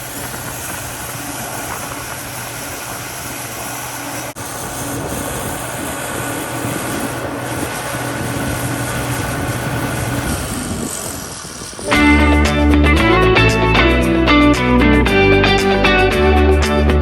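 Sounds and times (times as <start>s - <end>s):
farm machinery engine droning: 0.0s - 17.0s.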